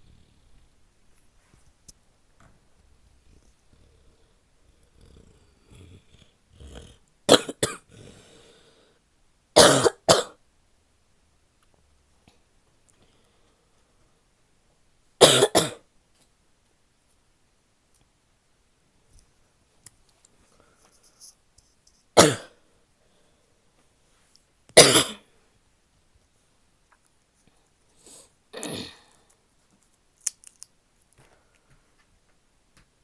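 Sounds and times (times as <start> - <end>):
woman coughing: 7.3 - 7.9, 9.6 - 10.3, 15.2 - 15.8, 22.2 - 22.5, 24.8 - 25.2, 28.6 - 29.0.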